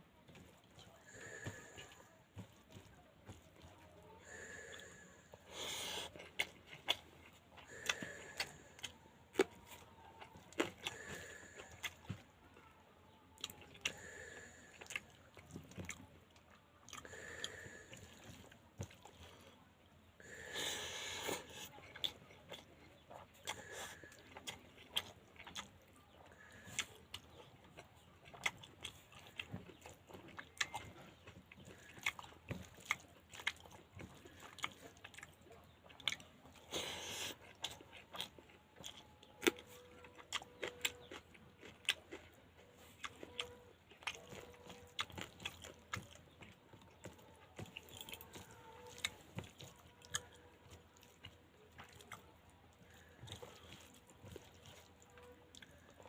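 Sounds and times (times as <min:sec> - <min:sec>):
chewing and wet mouth smacks: 0:05.6 - 0:12.7, 0:21.2 - 0:56.0.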